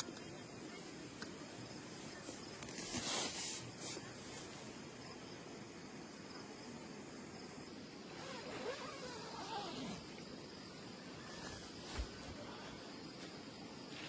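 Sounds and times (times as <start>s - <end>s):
insects chirping: 0.0s - 14.0s
short rustle: 2.1s - 4.8s.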